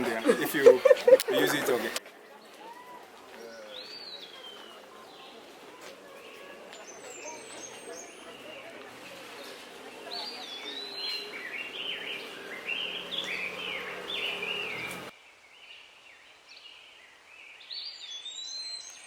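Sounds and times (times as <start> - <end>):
birds singing: 6.2 - 19.0.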